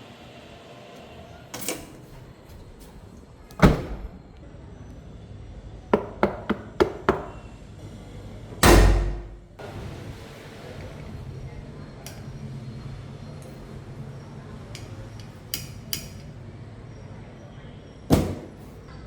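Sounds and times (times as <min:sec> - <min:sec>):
heavy clunk: 0:01.7 - 0:04.2, 0:08.6 - 0:09.6
car door shutting thud: 0:03.5 - 0:04.2, 0:08.6 - 0:09.4.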